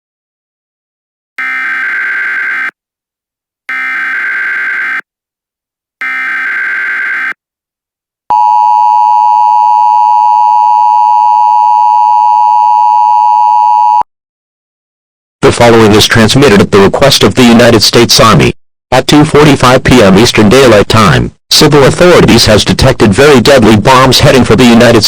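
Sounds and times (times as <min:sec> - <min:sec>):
screechy data tone bursts: 0:01.4 - 0:02.8, 0:03.7 - 0:05.0, 0:06.0 - 0:07.4
two-tone attention signal: 0:08.3 - 0:14.0.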